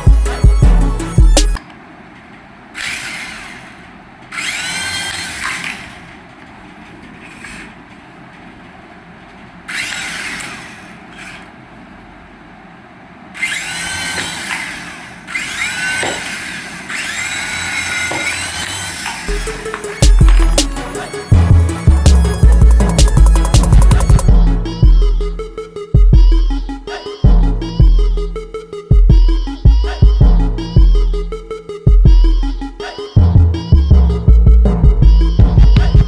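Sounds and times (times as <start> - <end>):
electric toy motor whirring: 2.8 - 6.2, 9.7 - 11.5, 13.4 - 24.3.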